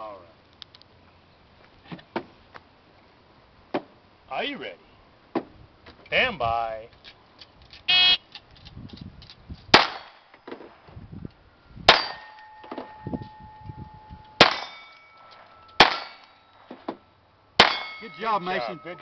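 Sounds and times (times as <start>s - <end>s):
pistol shots: 9.7s - 10.2s, 14.4s - 14.9s, 15.8s - 16.3s, 17.6s - 18.1s
steel target plate clanging: 11.9s - 16.9s, 17.6s - 19.0s.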